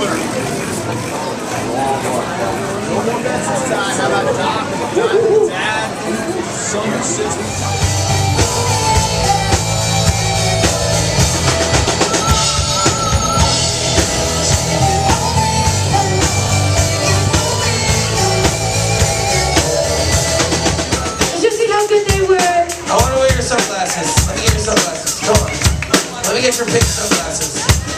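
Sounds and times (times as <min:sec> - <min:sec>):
loud rock music: 0:07.4 - 0:27.9
drum kit beat: 0:07.5 - 0:27.9.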